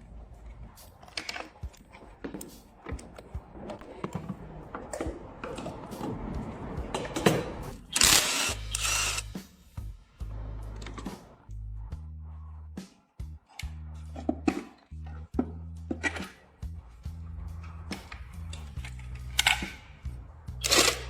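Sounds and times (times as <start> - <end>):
tools clicking and knocking: 1.0 - 4.2, 15.4 - 16.4.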